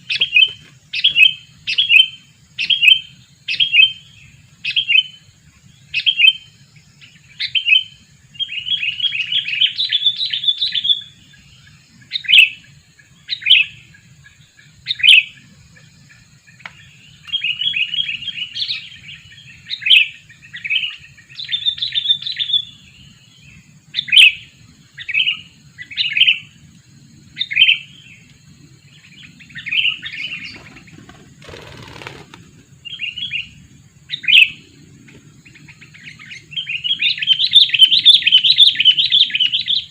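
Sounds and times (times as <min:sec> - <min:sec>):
bird chattering: 0:30.2 - 0:32.5.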